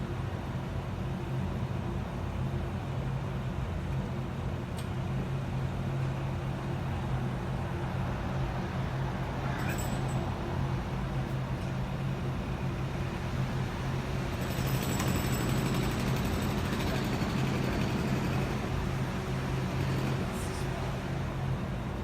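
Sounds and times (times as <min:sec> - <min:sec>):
large engine droning: 0:05.1 - 0:22.0.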